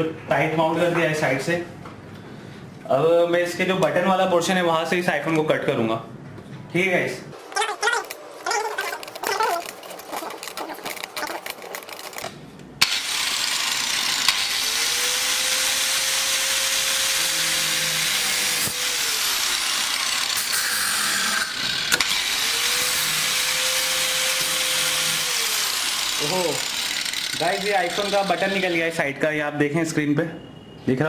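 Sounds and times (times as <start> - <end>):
angle grinder cutting metal: 12.8 - 29.0.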